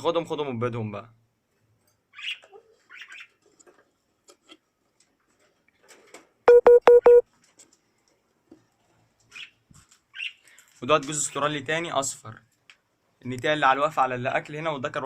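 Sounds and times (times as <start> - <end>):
quick electronic beeps: 6.5 - 7.2.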